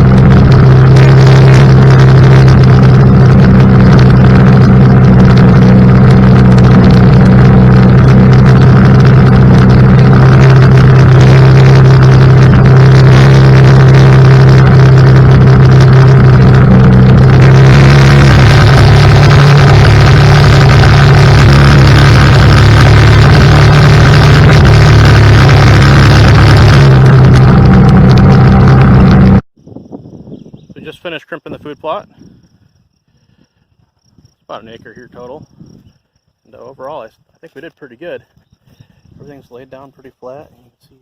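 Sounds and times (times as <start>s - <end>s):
atv engine running under load: 0.0s - 29.4s.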